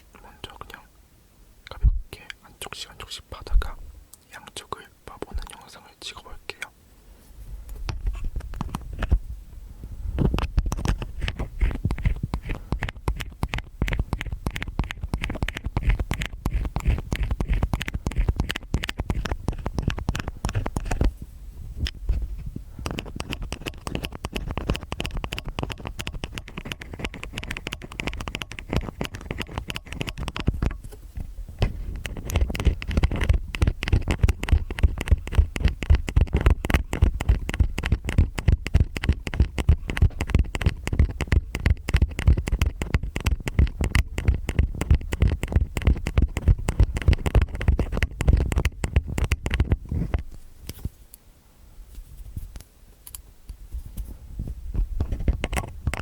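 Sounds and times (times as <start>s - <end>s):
ear pick scraping in ear: 10.2s - 21.2s, 21.8s - 51.0s.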